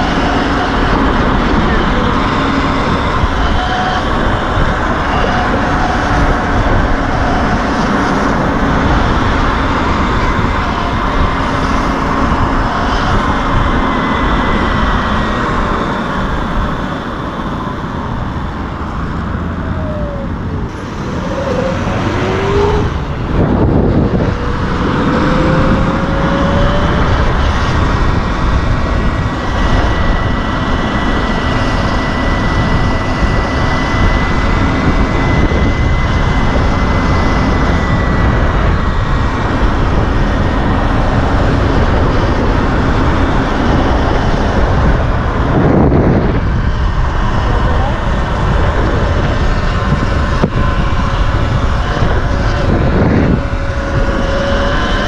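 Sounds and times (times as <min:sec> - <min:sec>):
wind and road noise: 0:00.0 - 0:55.0
motor whines: 0:17.0 - 0:27.7.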